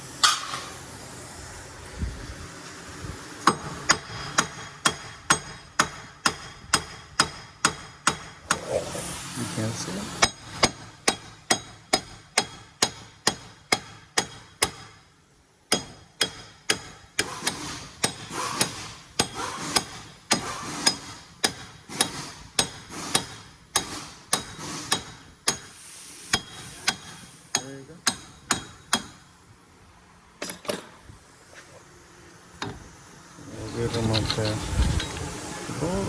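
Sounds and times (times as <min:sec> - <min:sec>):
hammer striking metal: 0:00.2 - 0:00.8, 0:26.3 - 0:29.2.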